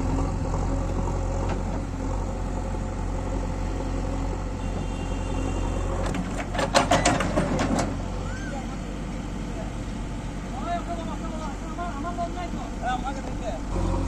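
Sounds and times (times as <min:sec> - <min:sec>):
diesel engine running: 0:00.0 - 0:14.0.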